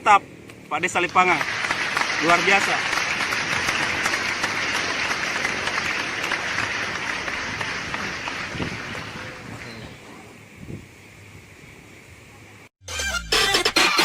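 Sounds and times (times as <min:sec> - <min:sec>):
crowd applauding: 0:00.8 - 0:09.8.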